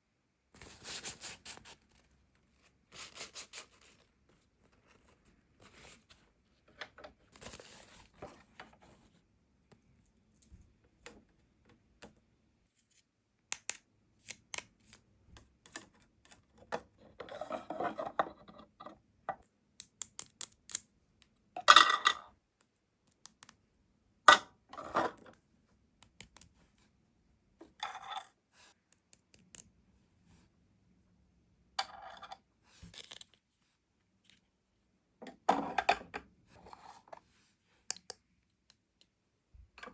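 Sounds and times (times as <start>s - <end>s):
plastic pieces clicking and tapping: 19.7s - 21.4s.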